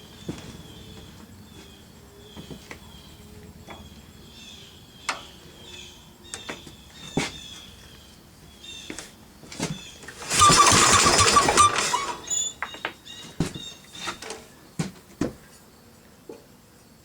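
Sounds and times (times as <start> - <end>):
high chirping: 9.9 - 13.8.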